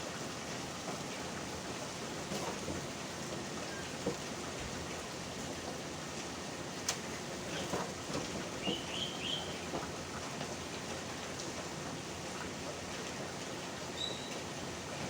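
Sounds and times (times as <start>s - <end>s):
rain falling: 0.0s - 15.0s
bird chirp: 8.6s - 9.6s, 14.0s - 14.3s.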